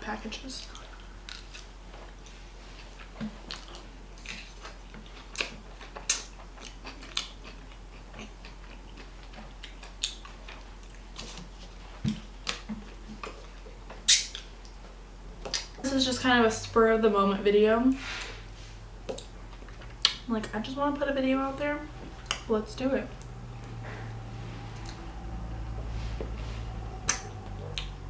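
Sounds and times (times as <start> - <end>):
person chewing food: 0.6 - 14.8, 27.0 - 28.0
wet mouth clicks and crackles: 14.1 - 14.5.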